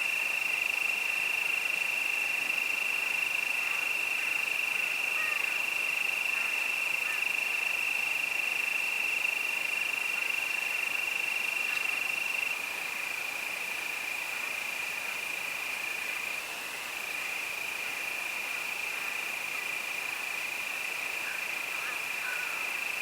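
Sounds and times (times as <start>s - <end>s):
crickets trilling: 0.0s - 23.0s.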